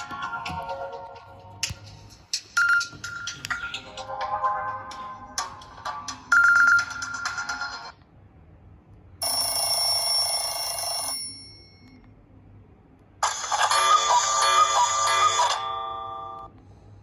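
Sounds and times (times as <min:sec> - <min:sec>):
electronic ringtone tune: 0:02.6 - 0:07.9
steady ringing tone: 0:09.2 - 0:11.9.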